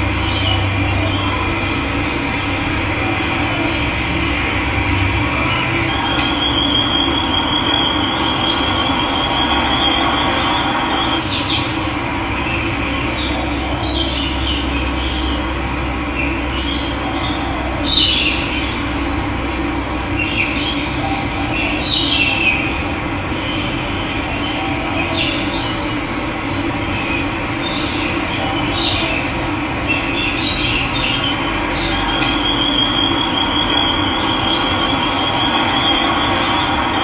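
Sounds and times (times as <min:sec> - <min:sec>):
bird trilling: 0:05.3 - 0:11.8.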